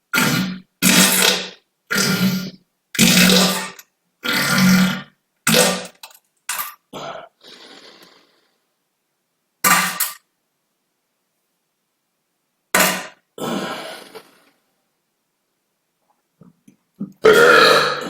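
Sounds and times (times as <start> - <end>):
farts: 0.1 - 6.0, 7.4 - 8.5.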